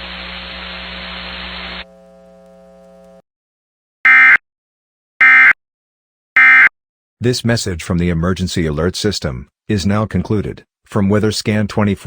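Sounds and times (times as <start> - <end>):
static hiss: 0.0 - 2.6
faint steady hum: 0.0 - 3.2.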